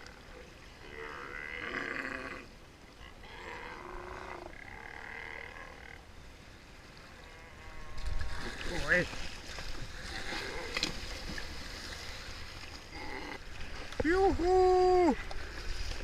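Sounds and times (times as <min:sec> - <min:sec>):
sea lions roaring: 0:00.0 - 0:06.1
wind and water rumble: 0:00.0 - 0:16.0.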